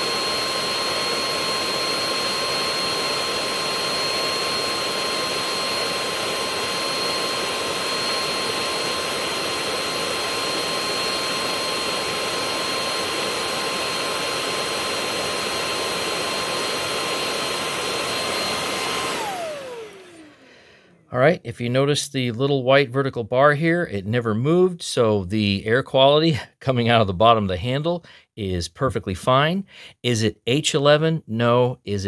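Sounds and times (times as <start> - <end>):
vacuum cleaner running: 0.0 - 21.4.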